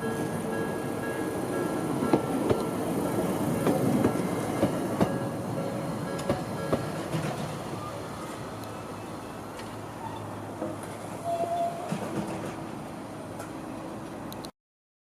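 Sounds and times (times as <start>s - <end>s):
streetcar rumble: 0.0s - 14.5s
wheels clicking over rail joints: 9.5s - 12.8s.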